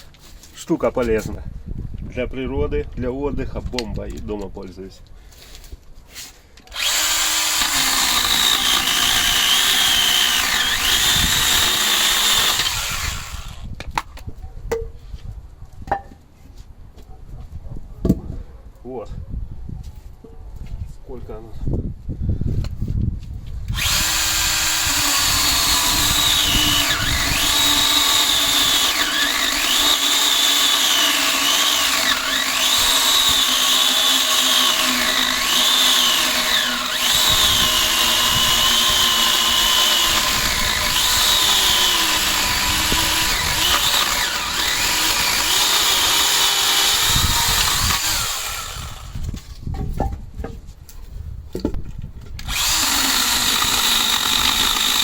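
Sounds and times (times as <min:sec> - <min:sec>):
electric motor whine: 0:06.8 - 0:13.6, 0:23.7 - 0:49.3, 0:52.4 - 0:55.0.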